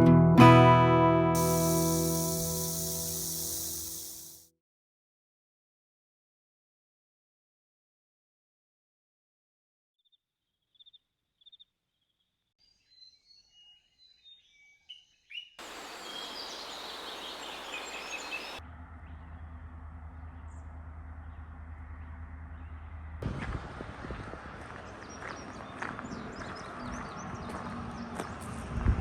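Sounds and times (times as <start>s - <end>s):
small birds chirping: 1.4s - 4.4s, 10.7s - 18.6s.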